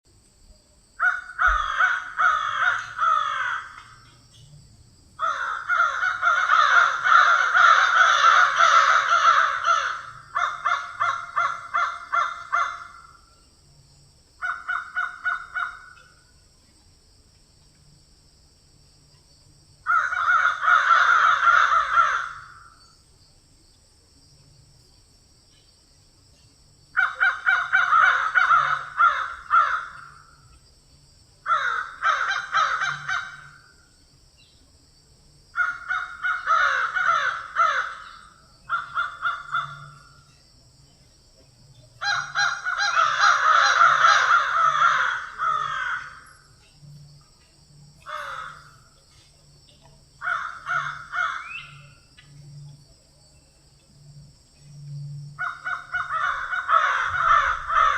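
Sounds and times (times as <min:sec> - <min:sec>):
crows cawing: 0:01.0 - 0:04.1, 0:05.2 - 0:13.3, 0:14.4 - 0:16.2, 0:19.8 - 0:22.9, 0:27.0 - 0:30.4, 0:31.4 - 0:33.8, 0:35.5 - 0:40.3, 0:42.0 - 0:46.4, 0:48.0 - 0:48.9, 0:50.2 - 0:51.9, 0:55.4 - 0:57.9.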